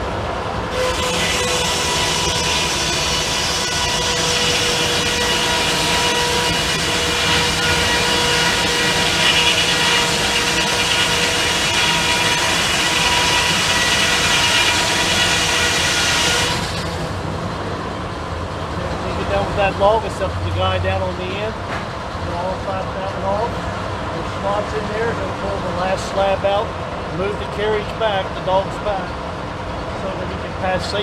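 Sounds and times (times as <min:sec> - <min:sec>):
circular saw blade ripping through log: 0:00.7 - 0:17.3.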